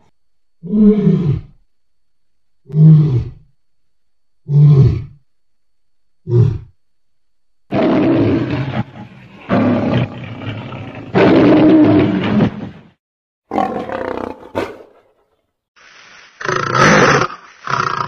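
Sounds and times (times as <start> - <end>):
big cat roaring: 0.6 - 1.6, 2.7 - 3.4, 4.5 - 5.2, 7.7 - 12.8, 13.5 - 15.1.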